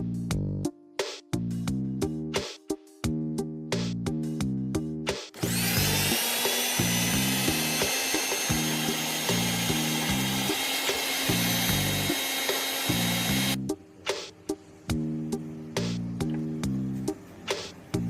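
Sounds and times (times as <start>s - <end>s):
background music: 0.0s - 18.0s
mixer grinder motor whining: 5.4s - 13.6s.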